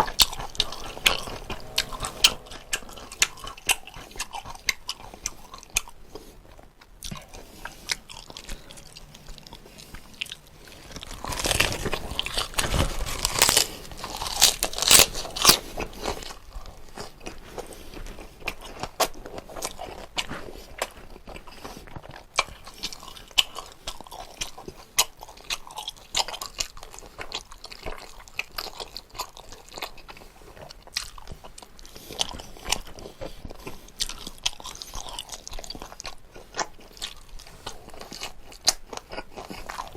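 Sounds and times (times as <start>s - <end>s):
wet chewing and mouth clicks: 6.8s - 11.1s, 15.8s - 39.9s
crunching bites of food: 10.2s - 16.3s.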